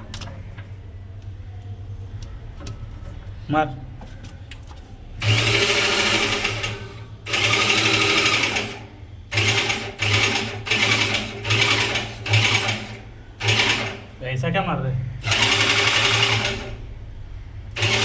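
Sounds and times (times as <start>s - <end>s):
power tool motor running in bursts: 5.2s - 14.2s, 15.2s - 16.8s, 17.7s - 18.0s.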